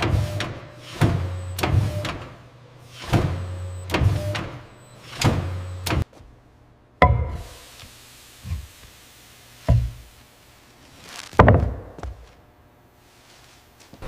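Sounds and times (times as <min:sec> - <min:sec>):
lumber knocking and thudding: 0:07.0 - 0:07.4, 0:09.7 - 0:10.0, 0:11.3 - 0:12.3.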